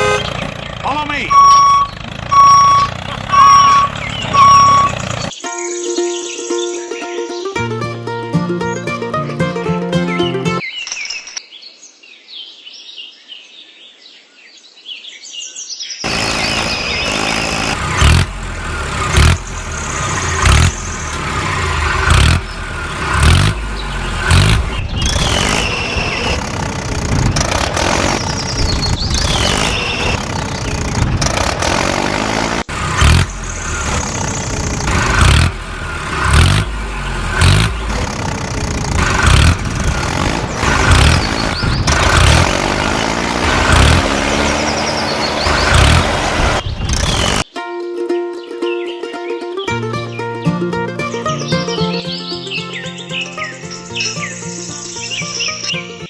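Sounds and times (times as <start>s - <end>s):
toy tractor engine: 1.3s - 5.2s, 31.3s - 44.7s
gliding high tones: 4.4s - 10.6s, 47.6s - 56.0s.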